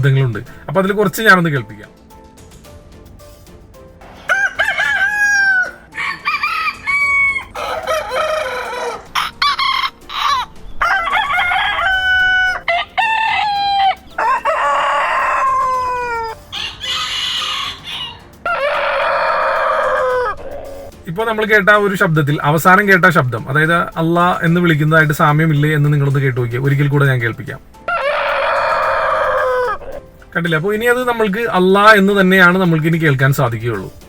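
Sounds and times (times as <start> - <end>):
rooster crowing: 4.2 - 20.9, 27.8 - 30.0.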